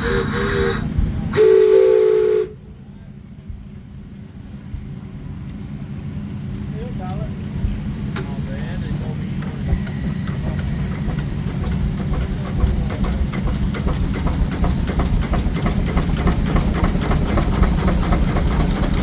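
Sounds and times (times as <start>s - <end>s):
steam engine exhaust chuffs: 0.0s - 2.6s, 7.6s - 19.0s
low rumble and hiss: 0.7s - 9.4s.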